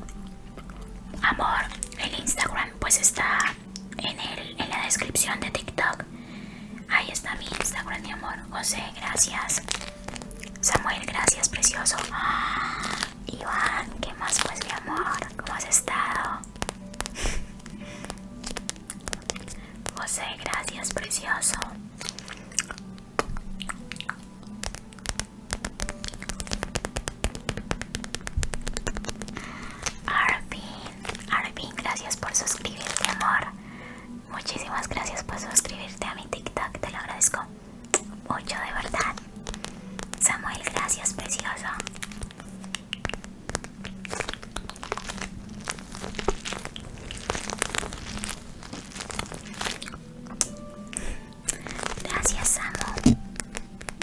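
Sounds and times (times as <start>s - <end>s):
fingers tapping and scratching: 0.0s - 6.1s, 6.8s - 33.6s, 34.4s - 54.0s
faint low hum: 0.0s - 54.0s
small taps: 24.6s - 29.4s.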